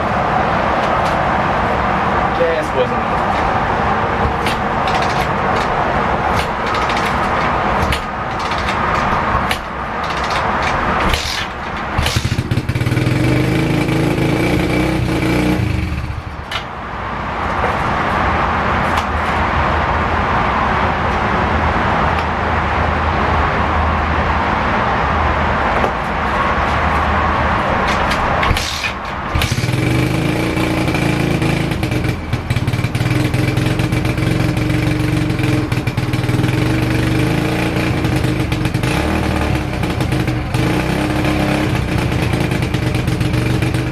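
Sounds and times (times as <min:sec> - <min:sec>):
small motorcycle engine revving: 0:04.2 - 0:16.6, 0:27.9 - 0:43.9.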